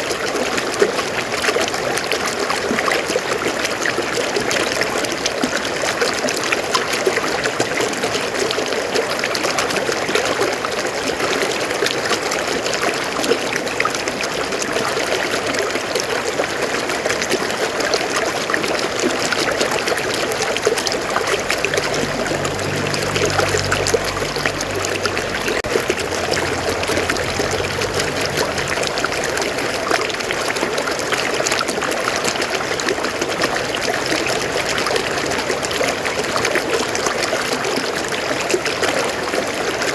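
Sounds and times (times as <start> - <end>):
river water flowing over rocks: 0.0 - 39.9
low drone: 19.6 - 36.4.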